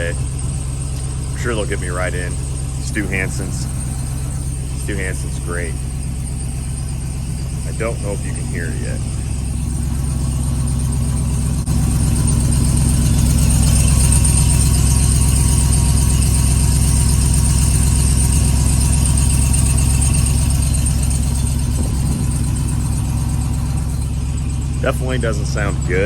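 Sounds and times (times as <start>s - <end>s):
engine idling: 0.0s - 26.0s
rattle from underneath: 2.2s - 24.8s.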